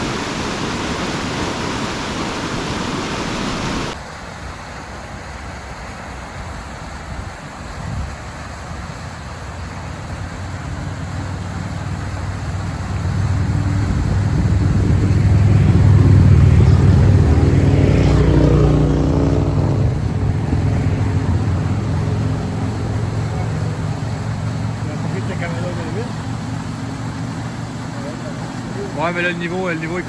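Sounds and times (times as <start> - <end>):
excavator diesel engine under load: 9.8 - 30.0.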